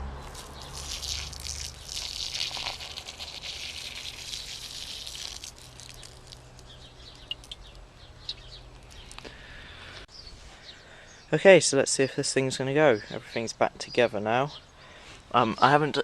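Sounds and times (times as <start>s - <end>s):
liquid pouring into a container: 0.2s - 6.6s
liquid dripping: 0.2s - 9.3s.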